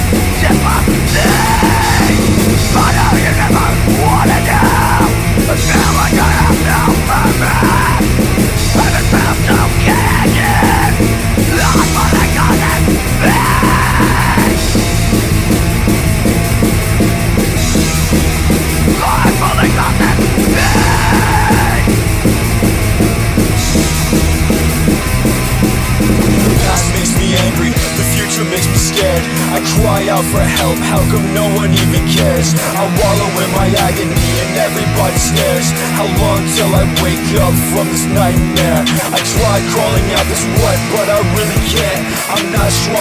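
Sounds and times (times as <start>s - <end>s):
punk metal music: 0.0s - 43.0s
person yelling vocals: 0.4s - 14.8s, 18.9s - 22.0s, 26.6s - 43.0s.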